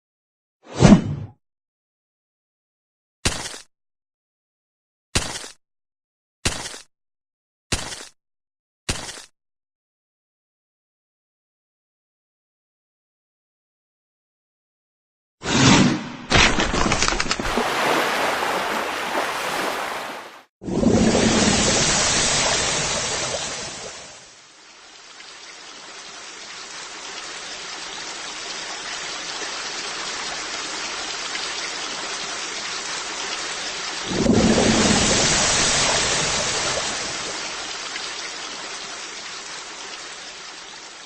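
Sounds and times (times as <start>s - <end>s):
rain-like hiss: 21.1s - 41.0s.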